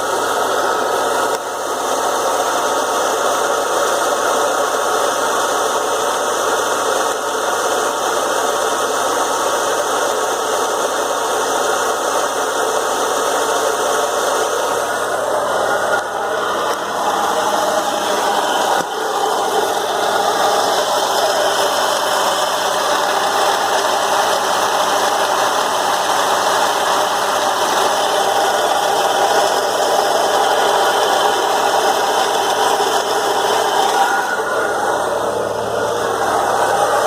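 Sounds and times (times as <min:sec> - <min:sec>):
car engine idling: 0:00.0 - 0:37.0
compressor mechanical noise: 0:00.0 - 0:37.0.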